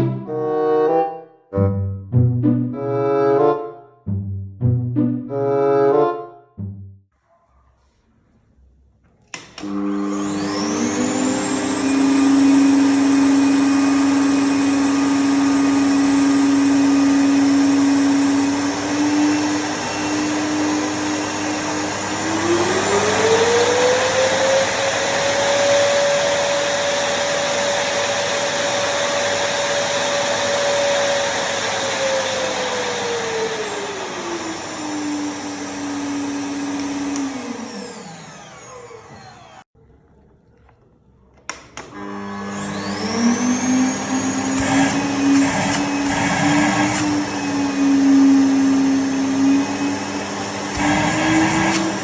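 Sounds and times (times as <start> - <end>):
vacuum cleaner motor whine: 9.3 - 39.7, 41.8 - 52.0.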